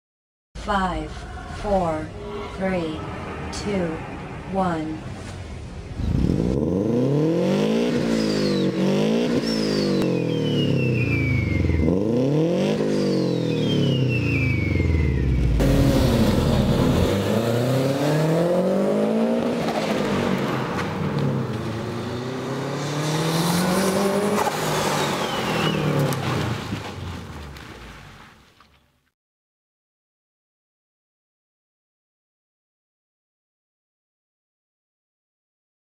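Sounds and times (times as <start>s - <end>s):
car engine revving: 5.8s - 26.8s
high whistles: 9.4s - 12.0s, 13.0s - 15.5s, 24.7s - 26.1s.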